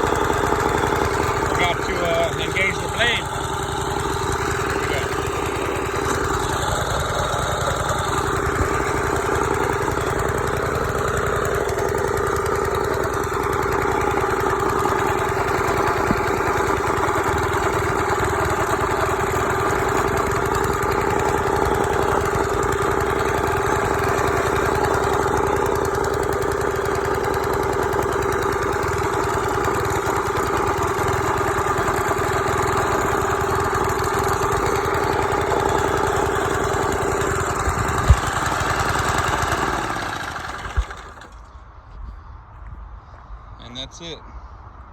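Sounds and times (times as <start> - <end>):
mower engine running: 0.0 - 41.8.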